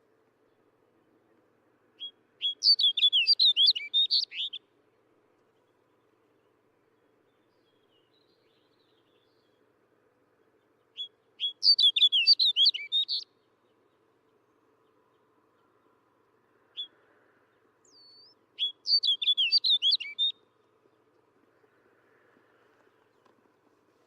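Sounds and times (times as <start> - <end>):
bird warbling song: 2.0 - 4.6, 10.5 - 16.0, 16.7 - 21.0.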